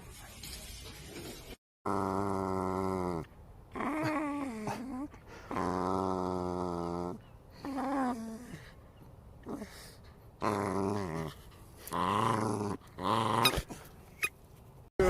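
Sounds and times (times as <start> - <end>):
dog growling: 1.9 - 8.7, 9.4 - 13.9.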